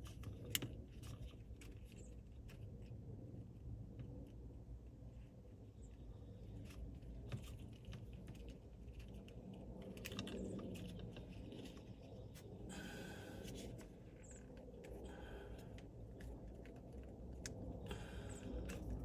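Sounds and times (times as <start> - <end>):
small clicks of handling wires: 0.0 - 3.0, 6.6 - 12.5, 15.6 - 18.0.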